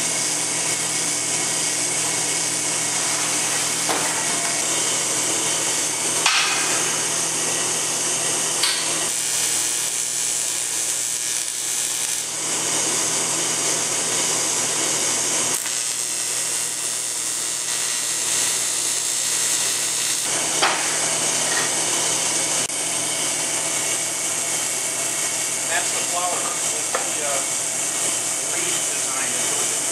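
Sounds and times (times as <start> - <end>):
low electrical hum: 1.9 - 13.5, 15.5 - 20.3
welding arc hiss: 2.4 - 21.1.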